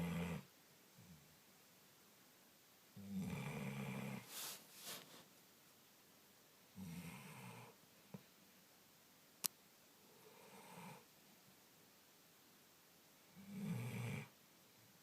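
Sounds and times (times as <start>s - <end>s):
pet snoring: 0.0s - 0.5s, 3.0s - 4.6s, 6.8s - 7.8s, 10.2s - 11.1s, 13.3s - 14.3s
short airy breaths: 4.2s - 5.2s.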